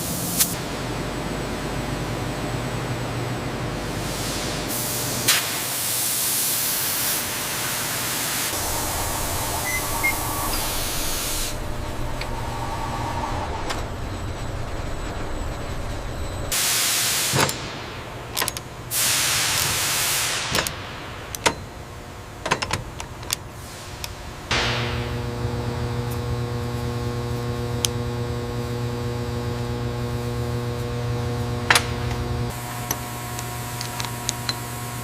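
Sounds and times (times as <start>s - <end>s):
loud hissing: 8.2s - 17.4s.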